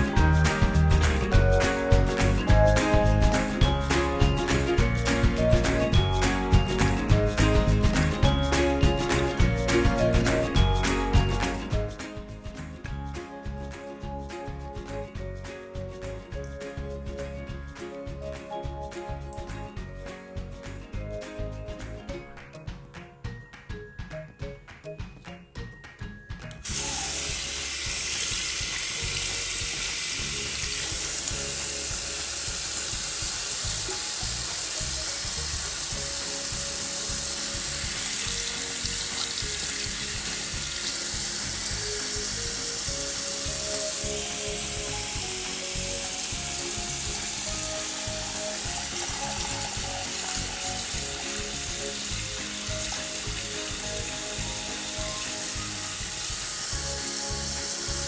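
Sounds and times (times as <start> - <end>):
faint background music: 0.0 - 58.0
brush cleaner motor whirring: 26.7 - 58.0.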